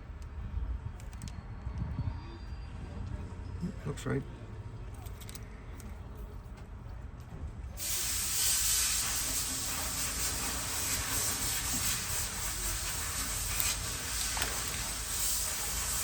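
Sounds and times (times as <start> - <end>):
steady hiss: 7.8 - 16.0.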